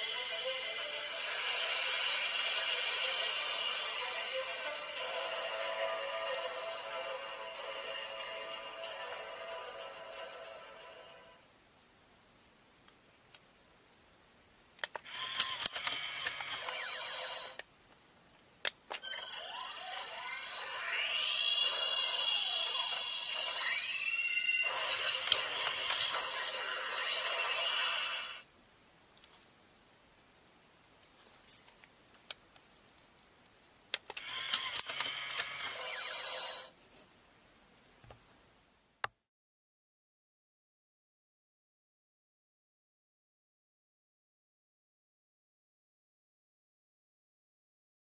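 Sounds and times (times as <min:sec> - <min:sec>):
toy electronic sound effect: 0:00.0 - 0:10.5, 0:15.1 - 0:17.6, 0:18.9 - 0:28.4, 0:34.2 - 0:36.7.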